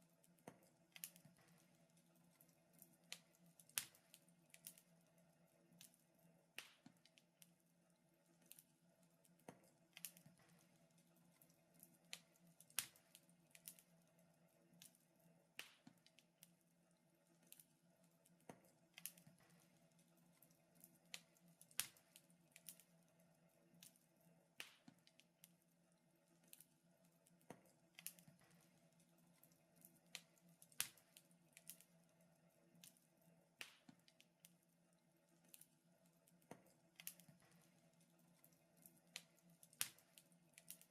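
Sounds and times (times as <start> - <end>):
faint steady hum: 0.0 - 40.9
wood fire crackling and popping: 0.3 - 5.0, 6.6 - 7.6, 9.2 - 14.0, 15.6 - 16.6, 17.4 - 23.0, 24.6 - 25.6, 26.4 - 32.0, 33.6 - 34.6, 36.3 - 40.9.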